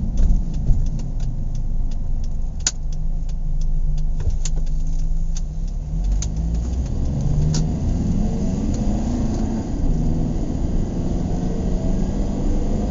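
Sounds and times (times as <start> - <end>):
sharp clicks: 0.0 - 7.8
car engine and road rumble: 0.0 - 12.9.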